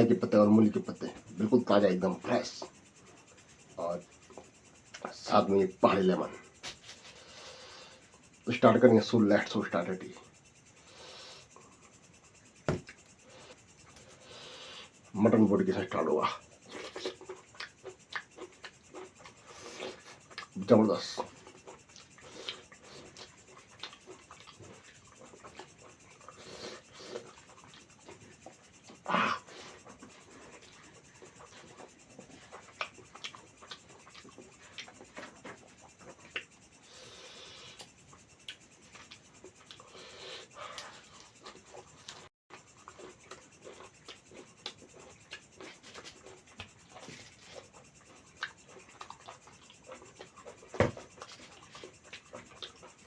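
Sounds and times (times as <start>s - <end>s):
wet chewing and mouth clicks: 15.8s - 53.0s.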